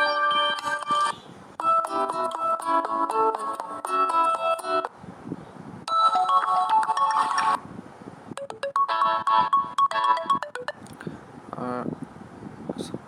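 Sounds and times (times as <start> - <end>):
phone ringtone melodies: 0.0 - 4.9, 5.9 - 7.6, 8.3 - 10.9.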